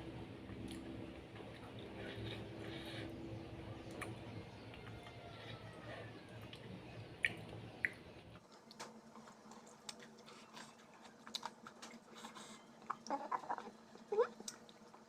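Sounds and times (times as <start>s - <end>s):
low steady hum: 0.0s - 15.0s
person chewing: 9.5s - 14.9s.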